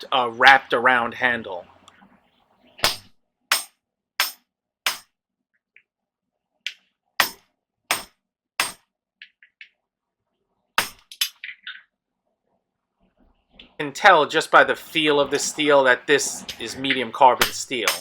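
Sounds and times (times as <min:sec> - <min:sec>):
hammer strikes on hot steel: 0:02.8 - 0:05.1, 0:07.2 - 0:08.8, 0:10.8 - 0:11.1, 0:17.4 - 0:18.0.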